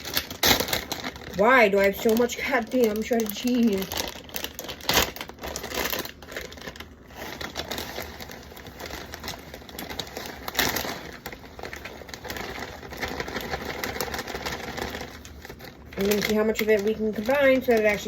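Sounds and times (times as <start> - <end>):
plastic bags crinkling: 0.0 - 18.0.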